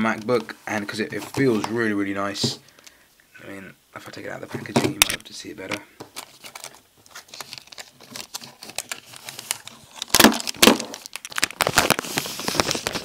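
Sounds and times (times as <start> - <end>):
plastic bag crinkling: 6.1 - 13.0.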